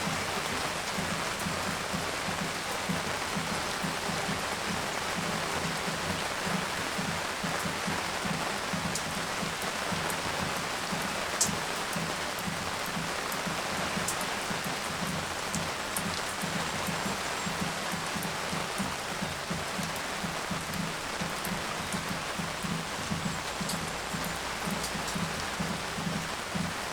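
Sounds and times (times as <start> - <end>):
rain patter: 0.0 - 26.9
water drips and splashes: 0.0 - 26.9.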